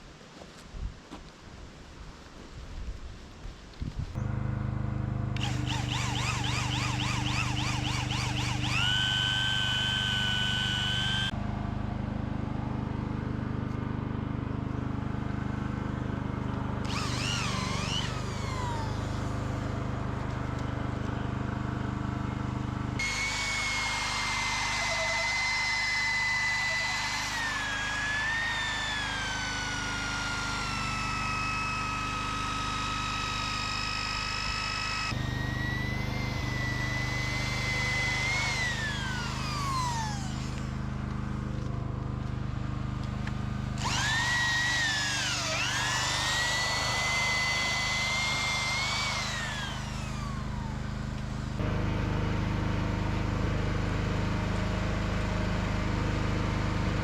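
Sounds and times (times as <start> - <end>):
low engine hum: 3.9 - 57.0
power drill motor whining: 5.2 - 11.4, 16.8 - 21.3, 23.0 - 51.6.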